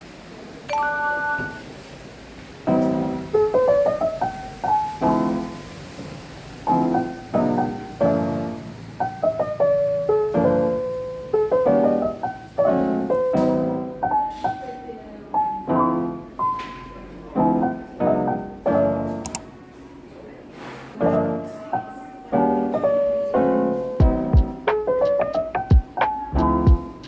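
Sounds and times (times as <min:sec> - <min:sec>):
gentle piano music: 0:00.0 - 0:20.1, 0:21.0 - 0:27.0.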